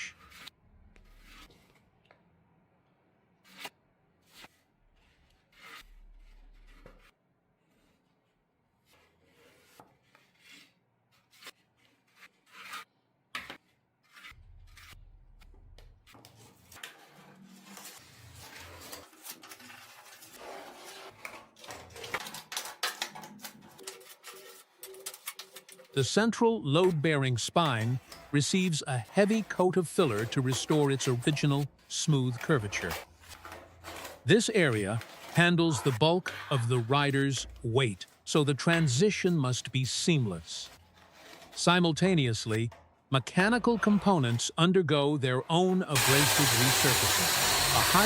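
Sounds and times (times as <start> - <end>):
body filler scraping on metal: 27.6 - 37.0.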